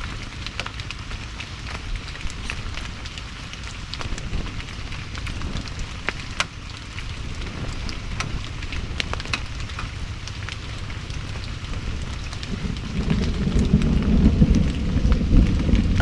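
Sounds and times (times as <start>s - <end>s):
sharp pops and crackles: 0.0s - 13.8s
heavy rain falling: 0.0s - 16.0s
low rumble: 0.0s - 16.0s.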